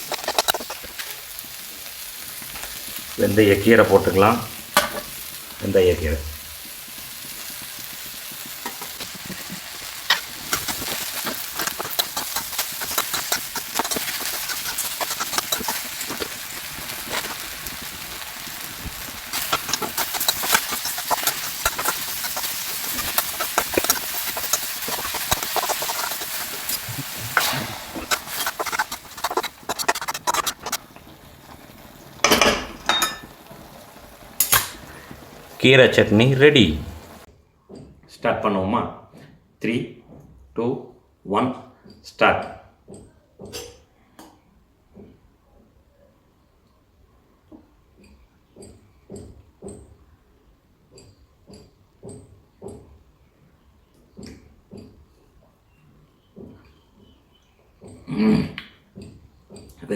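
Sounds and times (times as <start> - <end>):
spatula stirring and scraping: 0.0 - 5.6, 6.6 - 37.3
leaves sizzling in a pan: 0.0 - 37.3.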